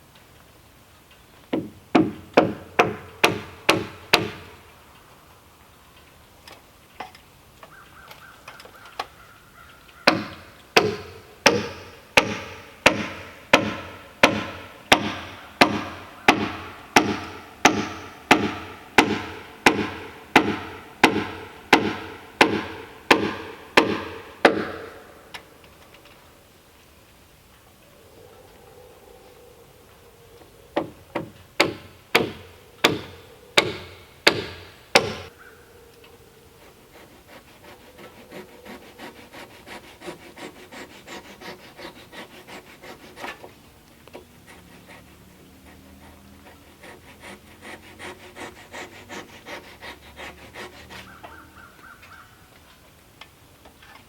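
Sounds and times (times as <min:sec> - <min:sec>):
hand tool striking wood: 0:01.5 - 0:04.6, 0:10.0 - 0:25.4, 0:30.8 - 0:35.3.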